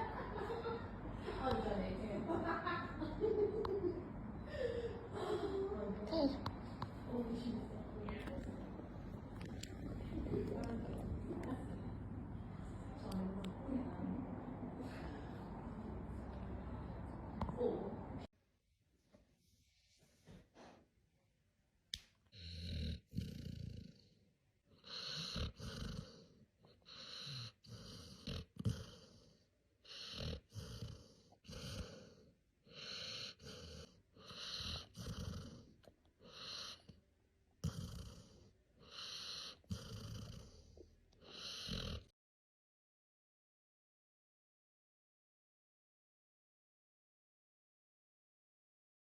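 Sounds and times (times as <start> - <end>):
dog snoring: 22.3 - 37.0, 37.6 - 42.1.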